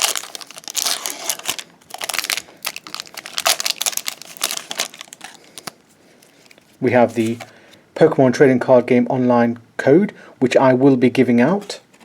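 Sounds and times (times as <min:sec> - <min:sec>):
foil wrapper crinkling and tearing: 0:00.0 - 0:07.5.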